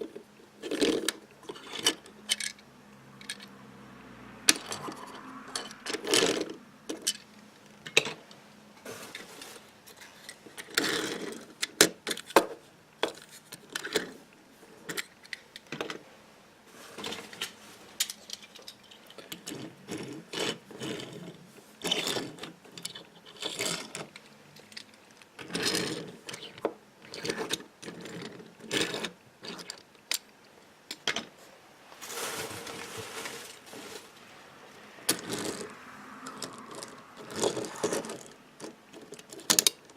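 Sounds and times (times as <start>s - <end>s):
toy cars clinking and rattling: 0.0s - 3.6s, 4.5s - 8.3s, 8.9s - 14.2s, 17.0s - 30.3s, 35.1s - 39.9s.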